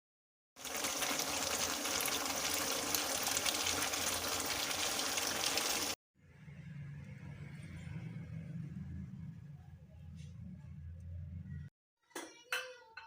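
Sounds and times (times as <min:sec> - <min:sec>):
running water rushing: 0:00.6 - 0:06.0.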